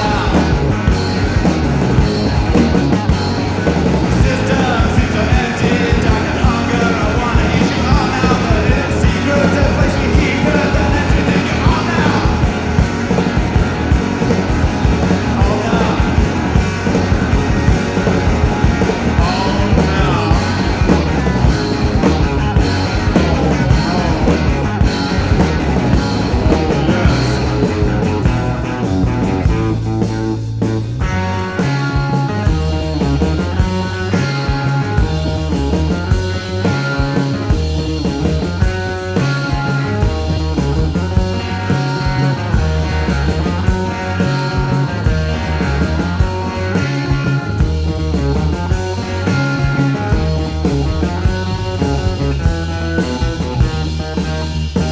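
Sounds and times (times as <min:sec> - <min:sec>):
bass guitar: 0:00.0 - 0:54.9
drums: 0:00.0 - 0:54.9
electric guitar: 0:00.0 - 0:54.9.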